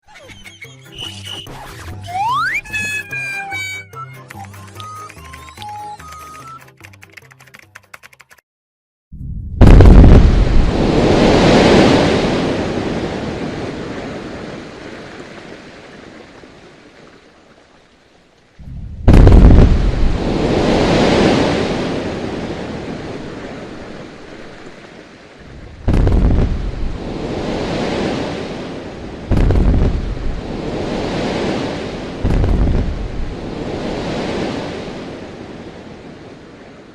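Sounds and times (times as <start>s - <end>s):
quarry blast boom and rumble: 9.2s - 12.4s, 18.6s - 20.9s, 25.5s - 27.6s, 29.2s - 31.0s, 32.1s - 33.6s.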